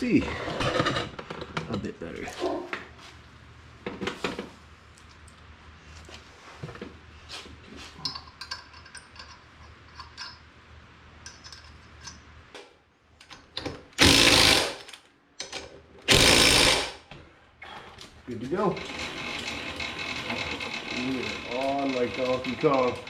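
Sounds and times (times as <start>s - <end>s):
clinks and knocks of parts: 8.0s - 10.5s, 11.2s - 13.9s, 14.8s - 15.9s
impact wrench bursts: 14.0s - 14.9s, 16.1s - 17.0s.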